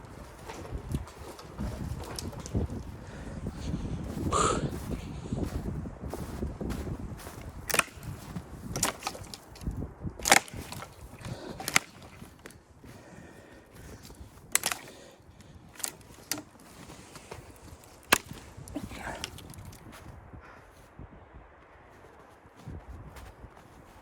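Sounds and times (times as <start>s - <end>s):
sharp knocks and cracks: 7.7s - 12.5s, 14.5s - 15.0s, 17.9s - 18.4s.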